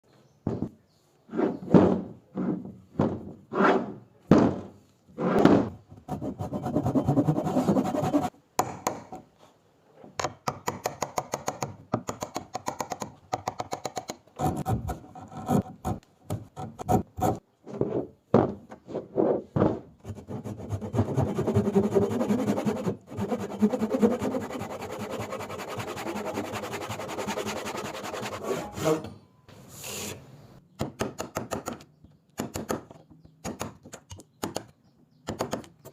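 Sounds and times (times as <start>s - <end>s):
rasping strokes on wood: 20.1s - 29.0s.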